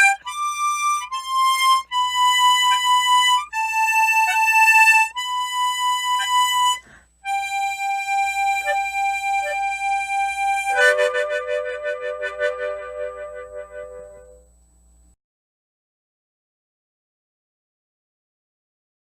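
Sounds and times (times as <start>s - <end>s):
tremolo harmonica melody: 0.0s - 14.5s.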